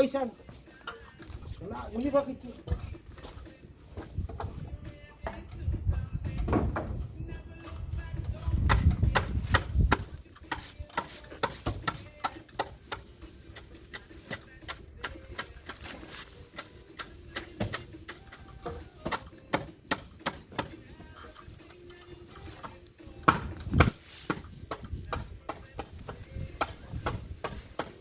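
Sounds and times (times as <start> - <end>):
sharp taps and knocks: 16.6 - 20.8, 22.6 - 28.0.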